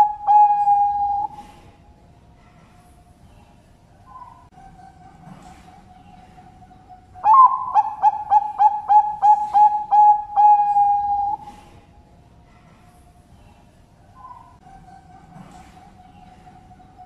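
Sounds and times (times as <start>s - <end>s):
dove cooing song: 0.0s - 1.8s, 4.1s - 11.8s.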